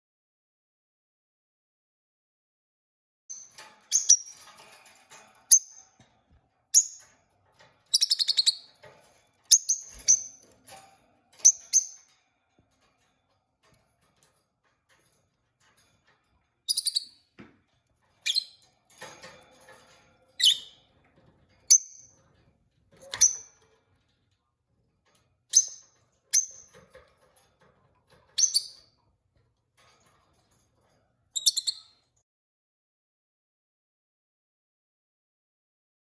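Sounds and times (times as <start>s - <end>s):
bird chirping: 7.9s - 8.8s, 16.7s - 17.2s, 31.4s - 32.0s.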